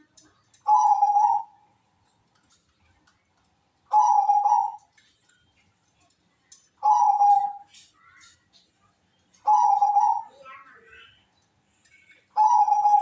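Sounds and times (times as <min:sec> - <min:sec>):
dove cooing: 0:00.0 - 0:01.7, 0:03.9 - 0:05.0, 0:06.8 - 0:07.7, 0:09.4 - 0:10.8, 0:12.3 - 0:13.0.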